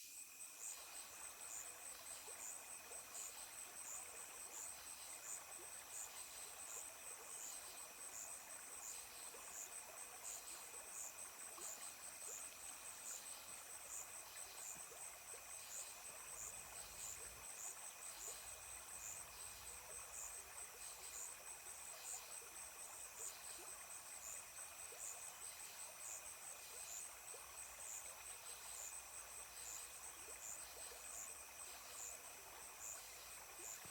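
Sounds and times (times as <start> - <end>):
insects chirping: 0.0 - 33.9.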